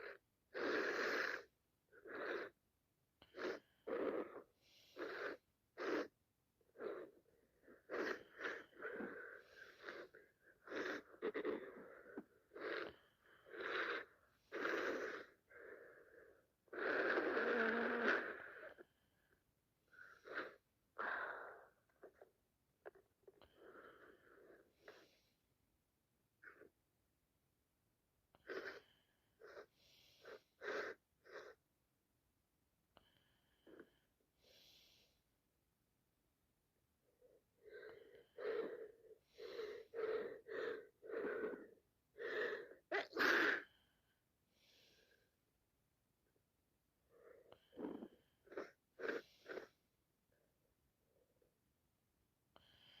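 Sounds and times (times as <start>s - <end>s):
person sniffing: 0.0s - 2.6s, 3.2s - 18.8s, 28.4s - 31.6s, 37.6s - 43.8s, 47.6s - 49.8s.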